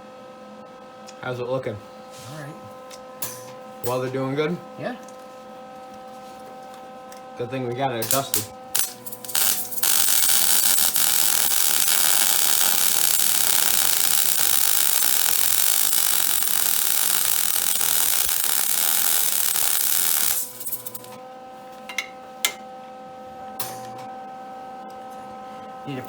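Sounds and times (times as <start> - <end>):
welder arc crackling hiss: 8.0 - 21.2
steady hum: 8.0 - 21.4.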